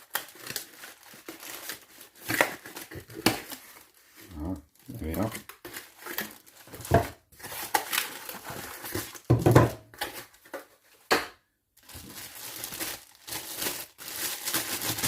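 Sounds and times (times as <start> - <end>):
plastic packaging crinkling: 0.0 - 9.3, 11.8 - 15.0.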